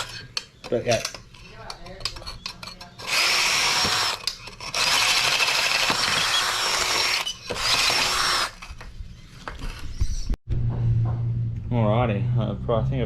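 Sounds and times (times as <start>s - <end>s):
power drill whining and grinding: 3.0s - 8.7s.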